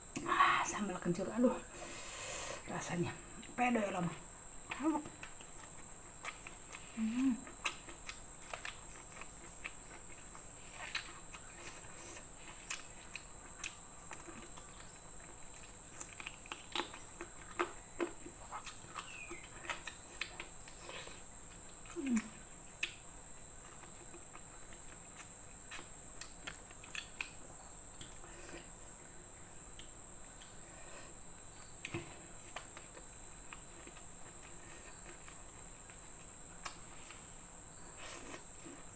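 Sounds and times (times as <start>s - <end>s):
person chewing food: 4.7s - 28.9s, 29.5s - 38.9s
closed-mouth hums: 6.3s - 8.0s, 17.6s - 22.6s.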